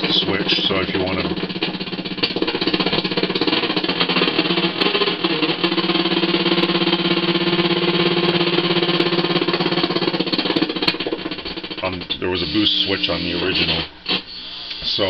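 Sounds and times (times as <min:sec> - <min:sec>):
distorted fuzz electric guitar: 0:11.4 - 0:14.3.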